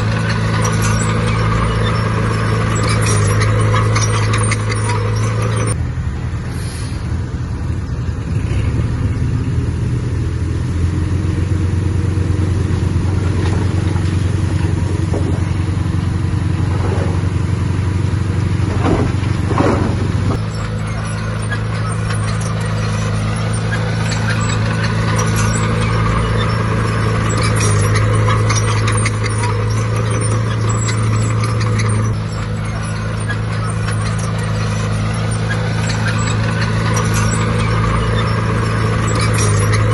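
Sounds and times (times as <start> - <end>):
diesel machinery engine drone: 0.0 - 39.9.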